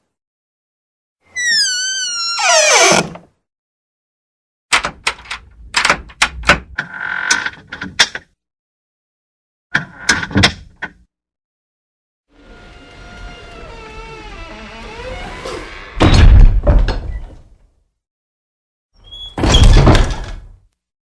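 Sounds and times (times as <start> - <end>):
door hinge squeal: 1.3 - 3.2, 12.4 - 16.2
short squeak: 1.3 - 3.2
door clacking and knocking: 4.8 - 6.8.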